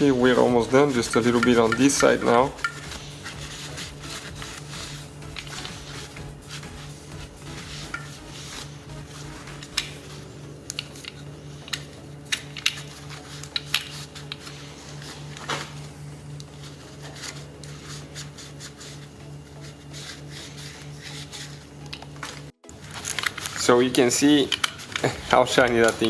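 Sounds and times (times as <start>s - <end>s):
metal part clicking and rubbing: 0.0s - 4.7s.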